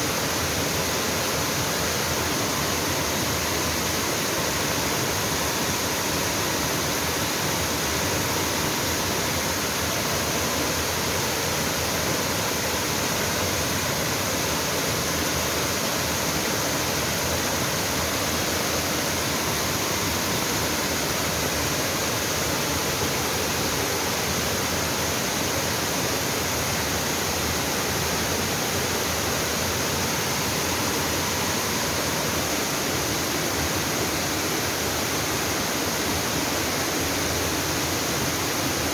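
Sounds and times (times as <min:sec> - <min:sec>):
waterfall rushing and splashing: 0:00.0 - 0:38.9.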